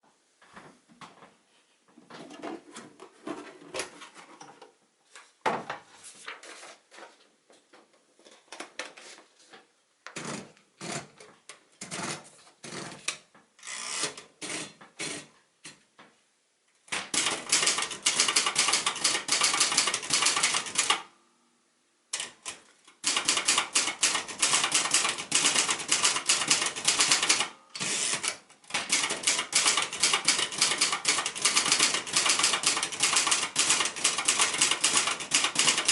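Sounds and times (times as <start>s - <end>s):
manual typewriter typing: 16.9s - 21.1s, 22.2s - 35.9s.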